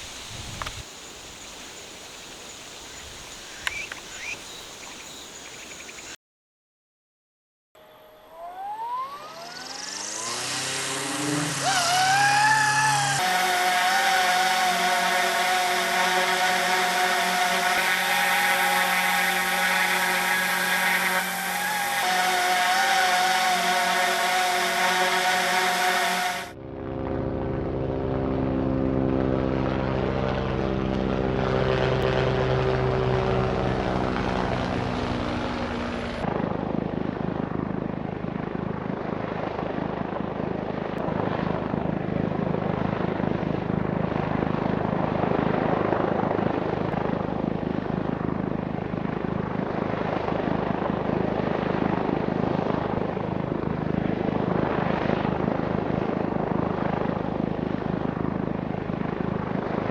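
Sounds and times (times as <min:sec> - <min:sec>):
model helicopter rotors spinning: 0:09.1 - 0:26.2.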